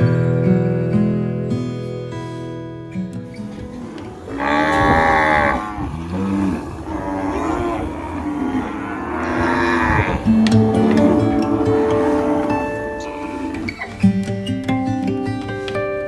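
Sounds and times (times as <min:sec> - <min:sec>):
cattle mooing: 0:04.3 - 0:13.9.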